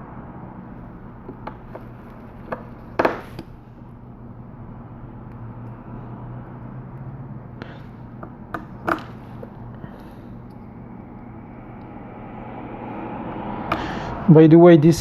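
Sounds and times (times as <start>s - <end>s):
steady low hum: 0.0s - 15.0s
hand tools clicking and tapping: 7.6s - 9.6s.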